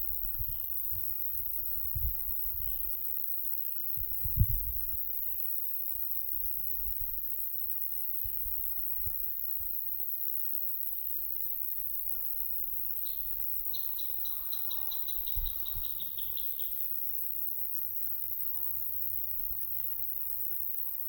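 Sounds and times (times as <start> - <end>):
wind rumbling on microphone: 0.1 - 2.8, 4.0 - 5.1.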